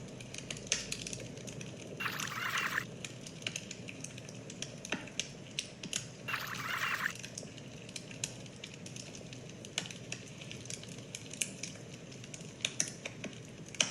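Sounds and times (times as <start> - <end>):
wood fire crackling and popping: 7.3 - 13.9.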